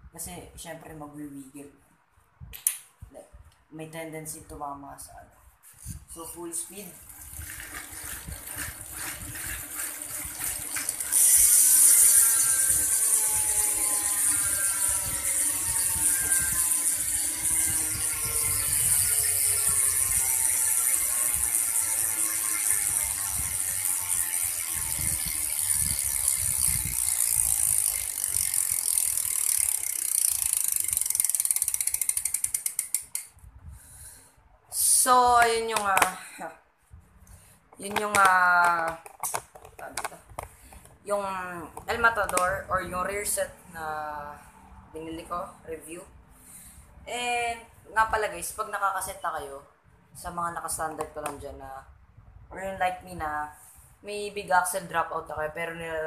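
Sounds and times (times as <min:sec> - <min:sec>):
bicycle hub ratchet clicking: 0:07.0 - 0:34.2, 0:40.0 - 0:43.4.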